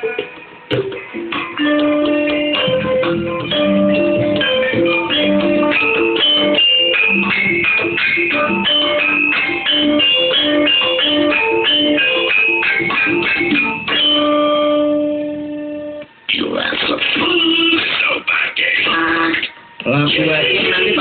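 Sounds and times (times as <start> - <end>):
keyboard music: 0.0 - 17.9, 18.9 - 21.0.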